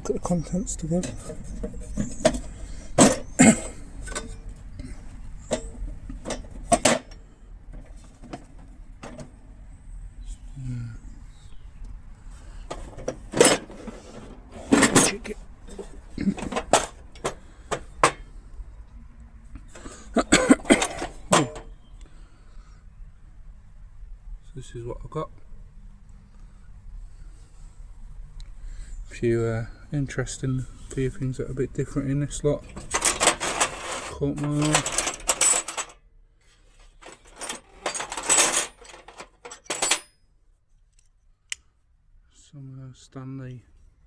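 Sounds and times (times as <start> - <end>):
metal tools clanking: 0.0 - 7.2, 12.7 - 18.2, 19.8 - 21.8, 32.6 - 36.0, 36.8 - 40.2
metal hand tools clinking: 32.7 - 36.0, 37.0 - 40.2.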